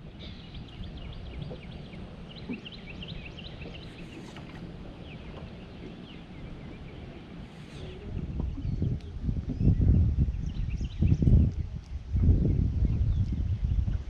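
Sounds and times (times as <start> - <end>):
small birds chirping: 0.1 - 13.9
steady low rumble: 4.6 - 14.0.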